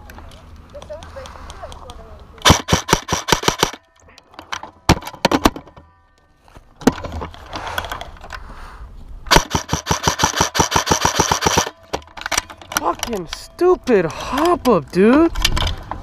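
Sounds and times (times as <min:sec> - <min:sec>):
airsoft gun firing: 0:02.4 - 0:03.8, 0:09.3 - 0:11.8.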